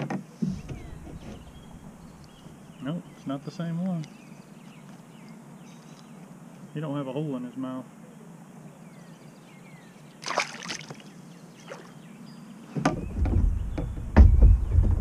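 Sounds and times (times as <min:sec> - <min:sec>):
knocks and thuds on kayak hull: 0:00.0 - 0:02.1, 0:12.8 - 0:15.0
water splash: 0:10.2 - 0:12.0.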